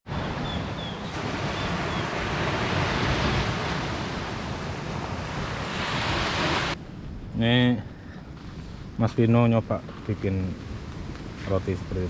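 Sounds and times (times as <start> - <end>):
sea surf washing: 0.1 - 6.8.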